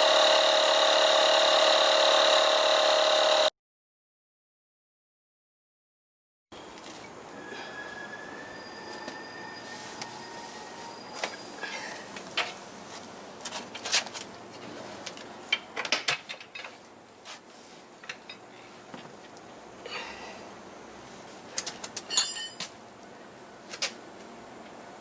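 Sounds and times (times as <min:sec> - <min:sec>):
metallic clinks and scrapes of tools: 0:21.6 - 0:22.8.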